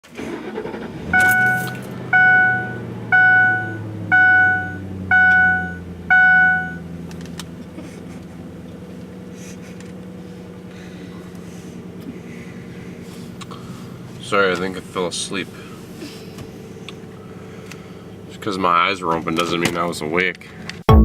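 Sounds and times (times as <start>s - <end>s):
engine humming: 0.0s - 21.0s
loud electronic beeps: 1.1s - 6.8s.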